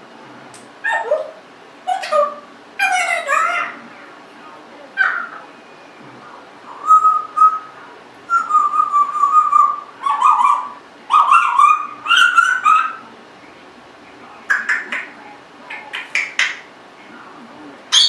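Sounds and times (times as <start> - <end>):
parrot whistling: 6.6 - 13.0.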